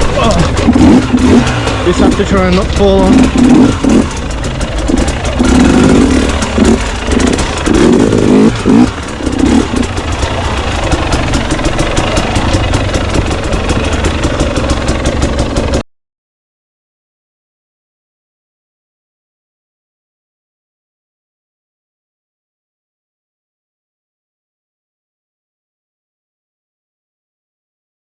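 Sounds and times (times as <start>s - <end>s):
dirt bike engine revving: 0.0s - 15.8s.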